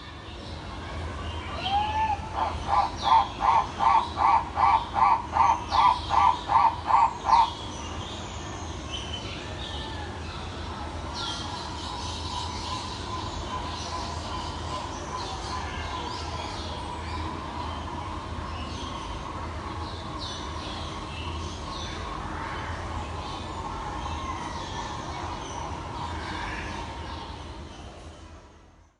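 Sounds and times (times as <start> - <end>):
background birdsong with high chirps: 0.0 - 28.9
rapid loud bird call: 1.5 - 8.0.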